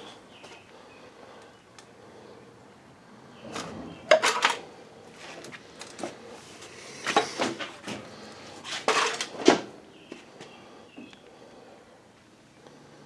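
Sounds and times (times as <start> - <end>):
objects knocking and clunking: 3.4 - 6.2, 8.8 - 9.7.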